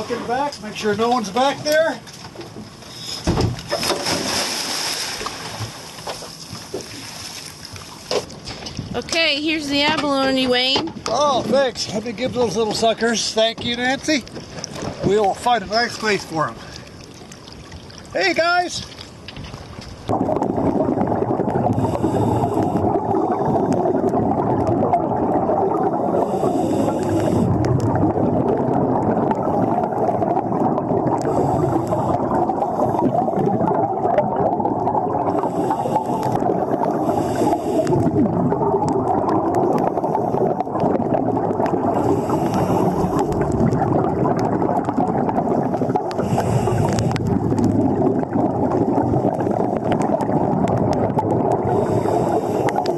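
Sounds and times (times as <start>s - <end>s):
water and bubbles rushing: 0.0s - 52.9s
scuba breathing hiss: 21.8s - 22.8s, 26.2s - 27.6s, 35.4s - 36.4s, 37.0s - 38.0s, 42.0s - 43.3s, 46.2s - 47.2s, 51.7s - 52.9s.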